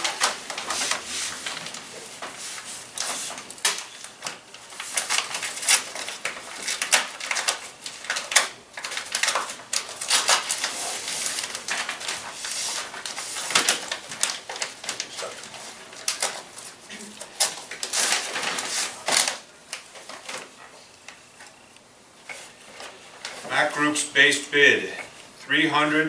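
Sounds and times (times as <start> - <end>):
paper crackling and rustling: 0.0 - 21.6.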